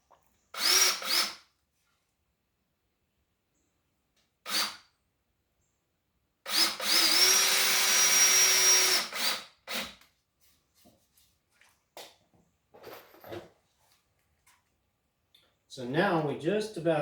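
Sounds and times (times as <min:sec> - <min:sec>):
drill driver driving screw: 0:00.6 - 0:01.4, 0:06.5 - 0:10.0.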